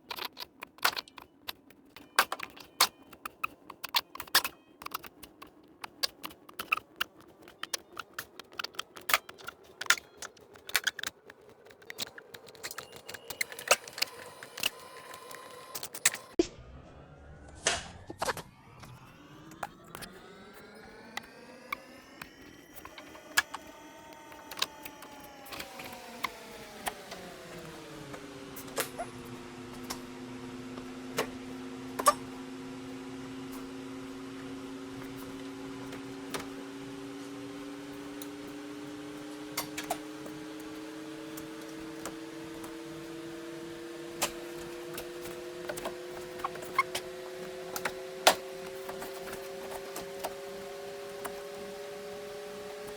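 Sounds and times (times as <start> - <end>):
steady hum: 11.6 - 52.9.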